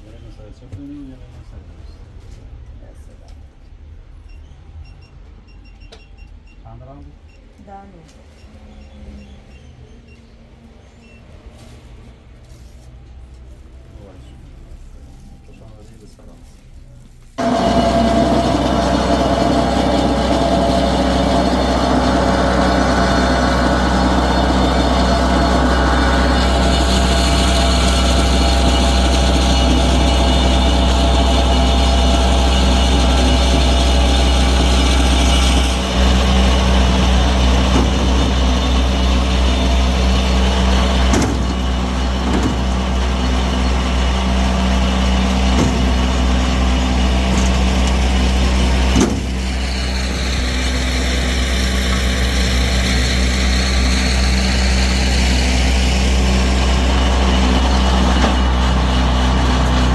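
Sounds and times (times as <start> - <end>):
engine humming: 17.3 - 59.9.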